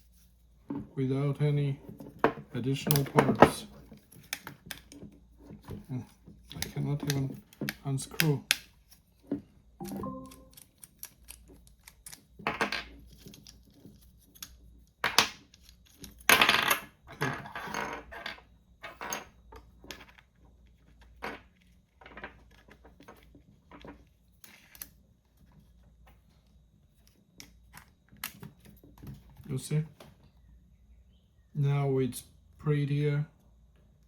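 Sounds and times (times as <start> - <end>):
small plastic parts clicking and clinking: 2.1 - 9.0, 10.3 - 25.7, 27.0 - 29.2.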